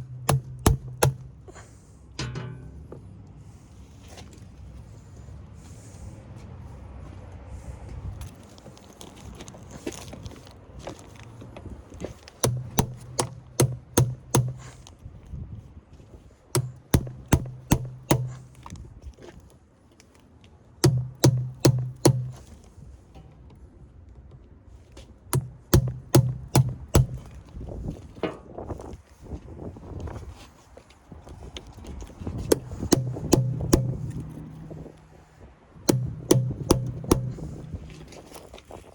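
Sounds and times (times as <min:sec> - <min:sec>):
hammer strikes on metal: 0:00.0 - 0:01.4, 0:02.2 - 0:02.9, 0:12.4 - 0:14.7, 0:16.6 - 0:18.4, 0:20.8 - 0:22.4, 0:25.3 - 0:27.2, 0:32.5 - 0:35.2, 0:35.9 - 0:38.1
low ringing hum: 0:00.0 - 0:06.0, 0:12.4 - 0:15.5, 0:32.5 - 0:38.9.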